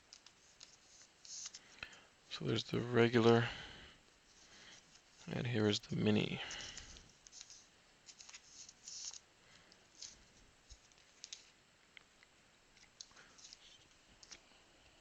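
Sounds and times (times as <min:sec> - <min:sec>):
trading cards clicking and rustling: 0:00.0 - 0:02.0, 0:06.4 - 0:11.6, 0:12.8 - 0:14.5.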